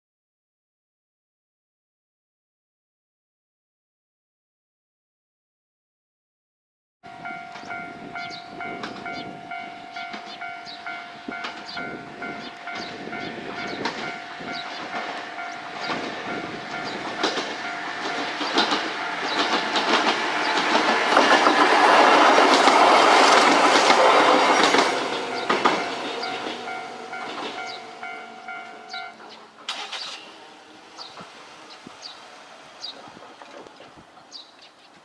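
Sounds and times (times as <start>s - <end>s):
crossing warning bell ringing: 7.0s - 33.5s
electric train passing: 7.1s - 34.6s
wheels clacking over rail joints: 7.1s - 35.0s.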